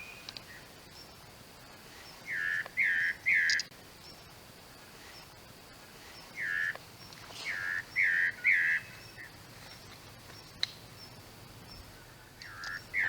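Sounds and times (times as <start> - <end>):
bird whistled song: 0.0 - 0.6, 2.2 - 3.7, 7.4 - 9.3, 12.4 - 13.0.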